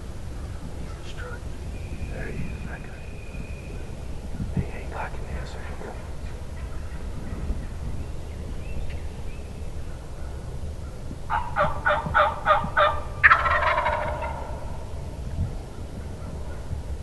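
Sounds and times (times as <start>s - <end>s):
turkey gobbling: 5.9s - 7.4s, 9.9s - 15.0s
turkey yelps: 11.3s - 14.8s.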